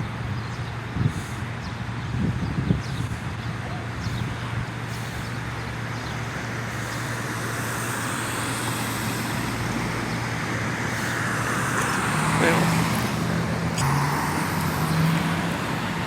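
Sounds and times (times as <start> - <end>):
traffic engine hum: 0.0 - 16.0
vehicle passing: 6.6 - 16.0.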